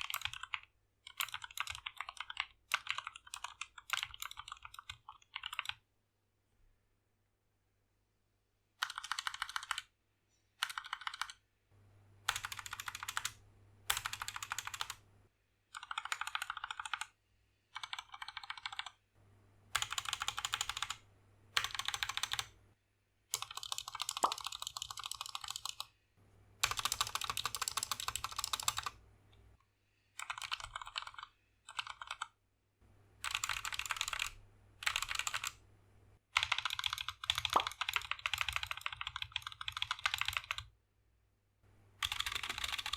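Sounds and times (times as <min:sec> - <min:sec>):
mechanical keyboard typing: 0:00.0 - 0:05.8, 0:08.8 - 0:09.9, 0:10.6 - 0:11.4, 0:12.3 - 0:15.0, 0:15.7 - 0:17.1, 0:17.8 - 0:19.0, 0:19.7 - 0:21.0, 0:21.6 - 0:22.6, 0:23.3 - 0:25.9, 0:26.6 - 0:29.0, 0:30.2 - 0:32.3, 0:33.2 - 0:35.6, 0:36.4 - 0:40.7, 0:42.0 - 0:42.9.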